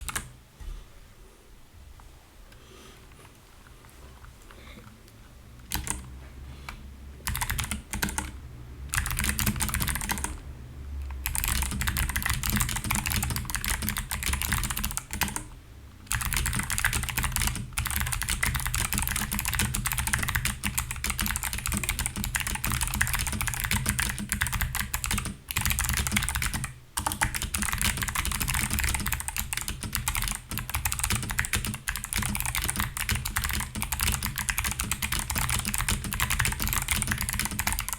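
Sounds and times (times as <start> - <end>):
mechanical keyboard typing: 0.0 - 0.3, 5.7 - 6.1, 7.2 - 10.4, 11.2 - 15.5, 16.1 - 37.9.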